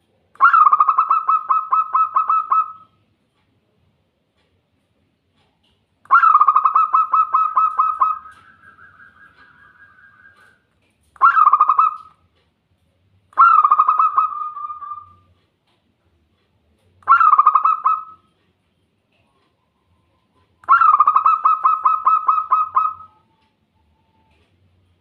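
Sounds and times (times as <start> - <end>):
dove cooing: 0.4 - 2.8, 6.1 - 10.6, 11.2 - 12.1, 13.4 - 15.3, 17.0 - 18.2, 20.6 - 23.4.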